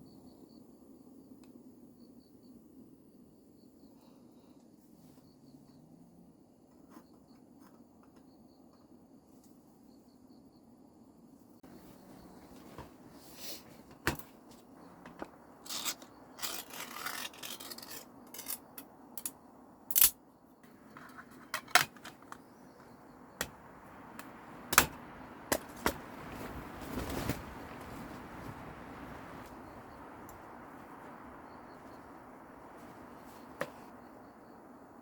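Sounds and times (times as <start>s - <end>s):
small objects being handled: 14.5s - 19.3s.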